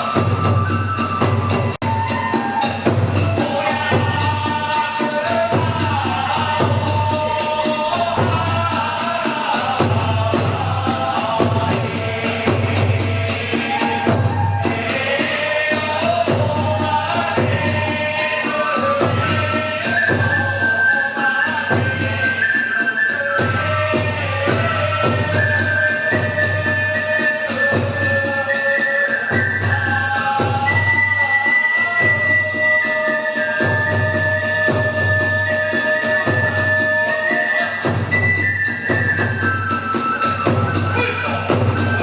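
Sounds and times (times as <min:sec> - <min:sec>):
bamboo flute high note: 0:00.0 - 0:04.2, 0:35.4 - 0:42.0.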